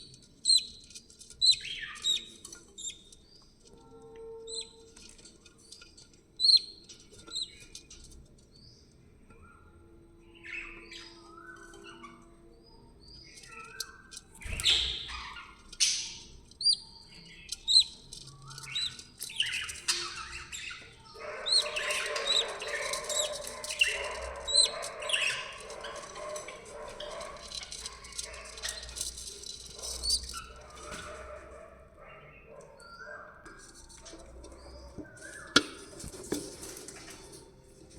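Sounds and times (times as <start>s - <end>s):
budgerigars chirping: 18.7s - 28.8s.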